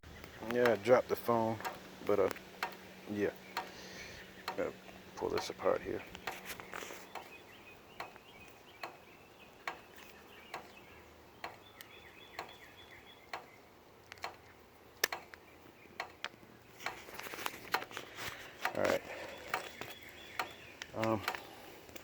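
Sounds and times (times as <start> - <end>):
faint bird chirps: 2.9 - 13.8, 18.9 - 21.6.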